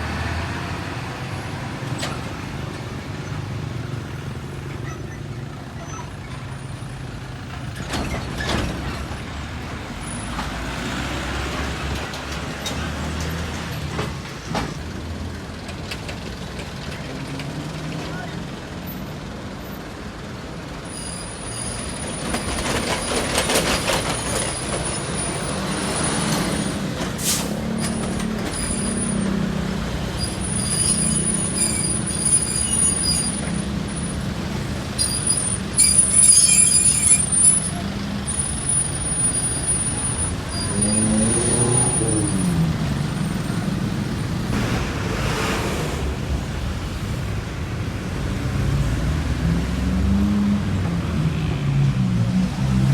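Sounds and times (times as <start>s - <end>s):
diesel trucks passing: 0.0s - 52.9s
air brakes hissing: 25.8s - 27.9s.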